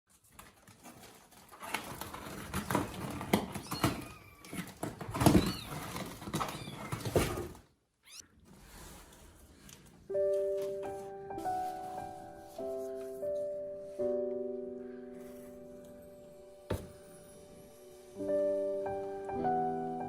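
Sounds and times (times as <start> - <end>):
rustling: 0.1 - 14.0
kittens mewing: 8.0 - 8.3.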